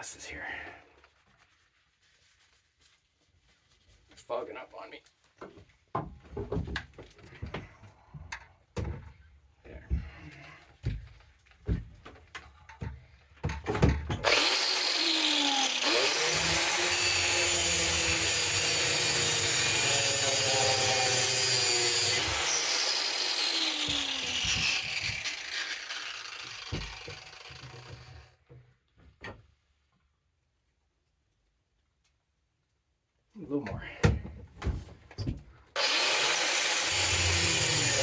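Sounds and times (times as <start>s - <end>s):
power grinder cutting metal: 14.2s - 28.3s, 35.8s - 38.0s.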